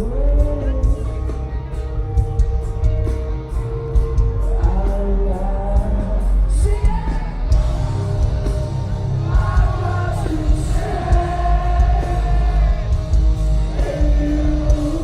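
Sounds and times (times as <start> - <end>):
metal band playing: 0.0 - 15.0
person singing: 4.3 - 15.0.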